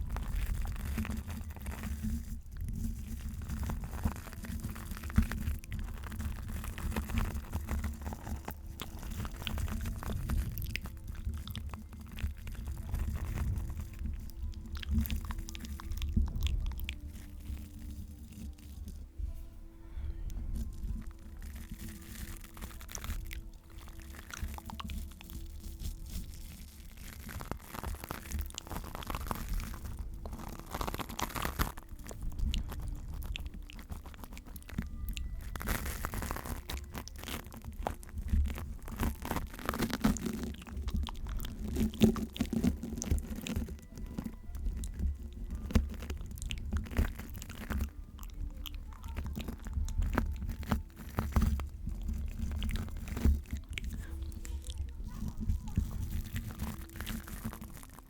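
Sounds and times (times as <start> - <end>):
crunchy crackles and taps: 0.0 - 19.4, 20.3 - 58.0
low rumble: 0.0 - 24.4.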